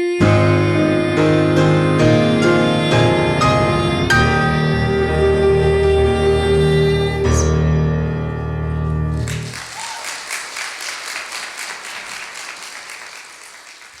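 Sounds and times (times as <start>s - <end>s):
held organ chord: 0.2s - 8.8s
congregation applauding: 9.1s - 14.0s.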